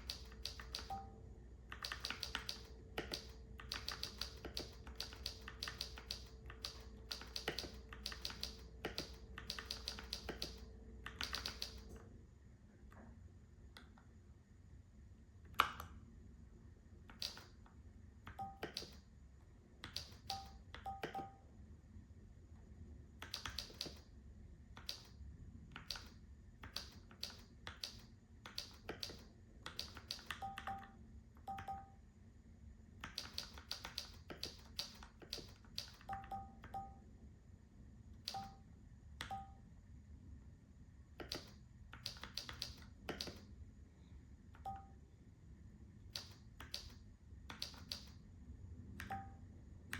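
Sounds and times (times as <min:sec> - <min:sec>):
mechanical keyboard typing: 0:00.0 - 0:01.1, 0:01.7 - 0:12.0, 0:17.1 - 0:17.6, 0:18.3 - 0:19.0, 0:19.8 - 0:21.4, 0:23.2 - 0:24.1, 0:24.8 - 0:31.9, 0:33.0 - 0:36.9, 0:41.2 - 0:43.4, 0:46.1 - 0:48.2
short electronic beeps: 0:20.3 - 0:21.4, 0:31.5 - 0:32.0, 0:36.1 - 0:37.0.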